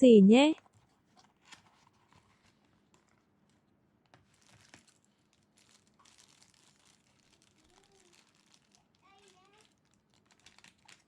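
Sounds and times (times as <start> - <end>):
package being opened: 4.2 - 11.0.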